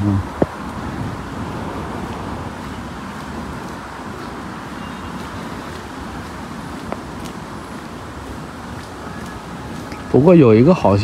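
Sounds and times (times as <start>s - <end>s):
road traffic passing: 0.0s - 11.0s.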